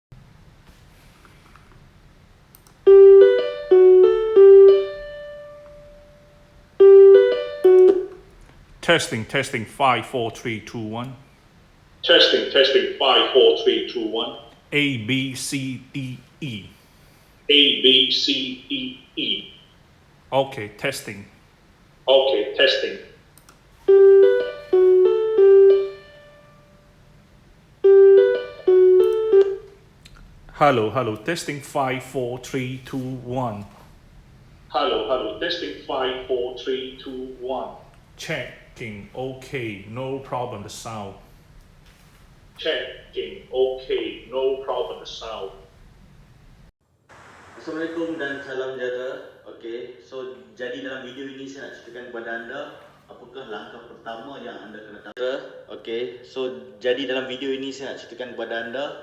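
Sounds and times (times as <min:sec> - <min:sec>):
electric piano melody: 0:02.8 - 0:08.3, 0:23.9 - 0:26.8, 0:27.8 - 0:29.8.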